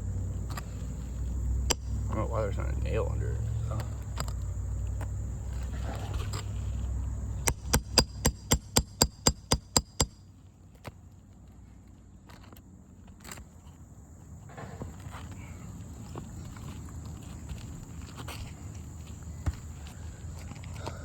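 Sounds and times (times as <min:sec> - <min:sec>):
hammer striking metal: 0:01.7 - 0:02.1, 0:07.4 - 0:10.2.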